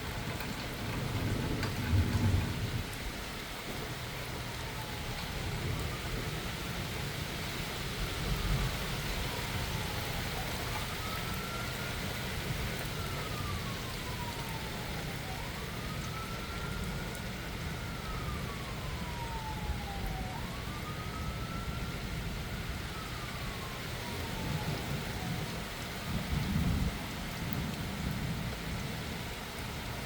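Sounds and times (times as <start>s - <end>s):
steady rain: 0.0s - 30.0s
siren wailing: 4.0s - 6.9s, 8.2s - 26.8s.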